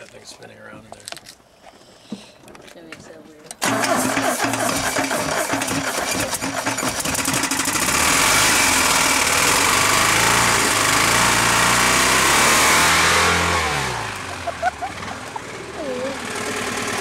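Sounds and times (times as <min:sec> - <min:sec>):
engine knocking and revving: 0:03.6 - 0:17.0.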